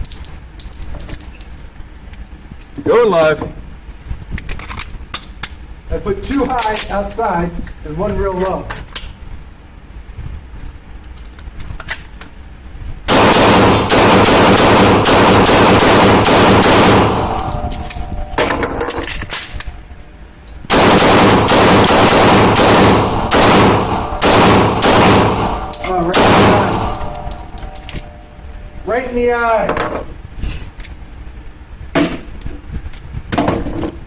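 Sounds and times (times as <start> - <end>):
pistol shots: 13.1 - 17.7, 20.7 - 27.7.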